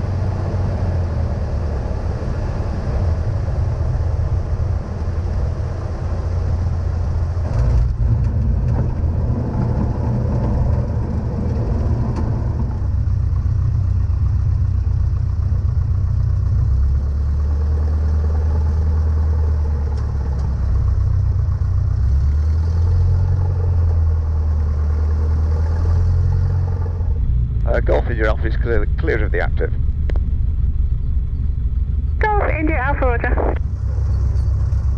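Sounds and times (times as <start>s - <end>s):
small aircraft engine drone: 0.0s - 34.9s.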